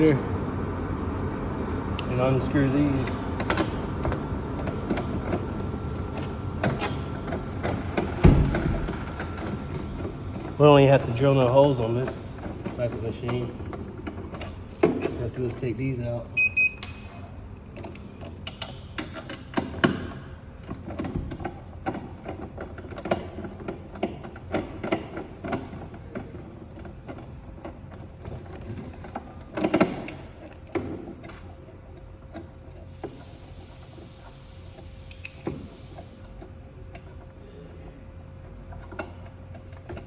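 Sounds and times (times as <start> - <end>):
machine humming: 0.0 - 18.3
hiss: 32.9 - 36.2.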